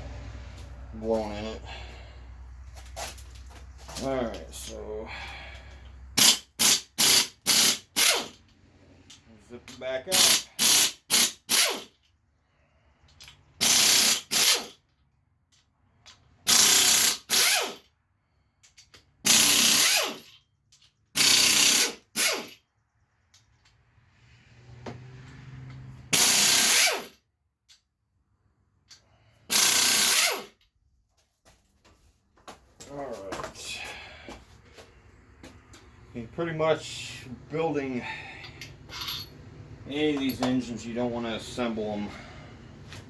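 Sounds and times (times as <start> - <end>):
air impact wrench bursts: 6.1 - 8.4, 10.1 - 12.0, 13.6 - 14.8, 16.4 - 17.9, 19.2 - 20.4, 21.1 - 22.6, 26.1 - 27.2, 29.4 - 30.6.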